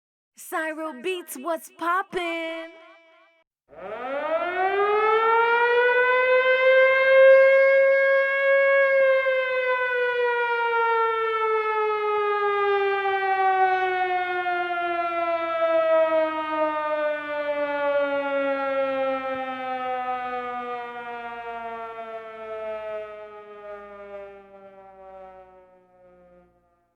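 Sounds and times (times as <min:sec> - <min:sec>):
air-raid siren wailing: 0:02.4 - 0:26.9.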